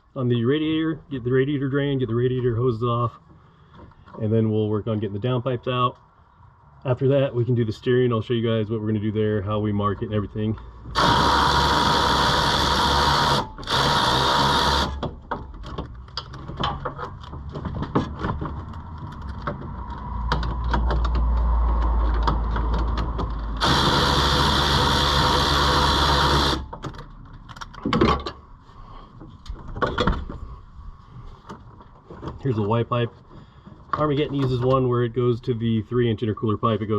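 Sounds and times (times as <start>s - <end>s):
handheld power tool running: 11.0s - 15.0s, 23.6s - 26.7s
tools and metal parts clanking: 15.1s - 23.5s, 26.7s - 28.5s.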